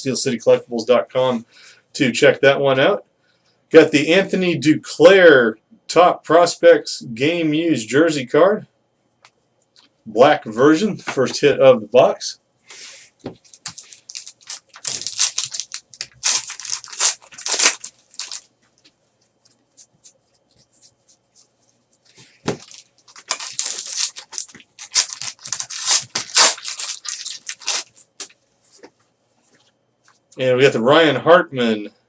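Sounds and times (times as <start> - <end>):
card pack wrappers crinkling and tearing: 13.4 - 18.5, 22.0 - 28.4.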